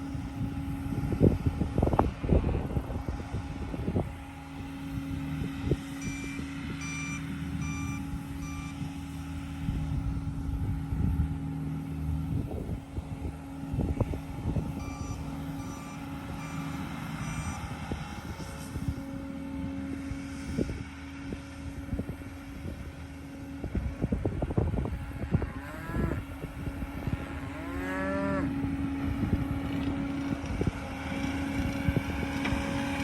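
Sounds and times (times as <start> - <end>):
track loader engine running: 0.0 - 33.0
backup alarm beeping: 6.0 - 8.8, 14.8 - 17.6.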